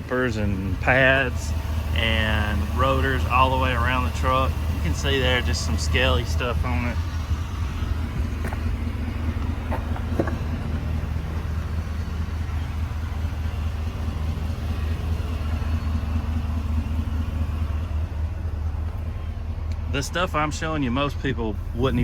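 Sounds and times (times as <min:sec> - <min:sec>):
engine idling: 0:00.0 - 0:22.0.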